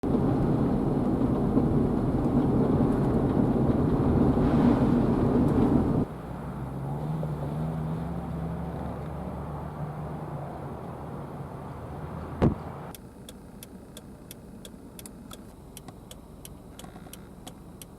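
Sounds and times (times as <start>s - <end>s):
vehicle engine running: 0.0s - 17.9s
wind buffeting microphone: 0.1s - 6.1s.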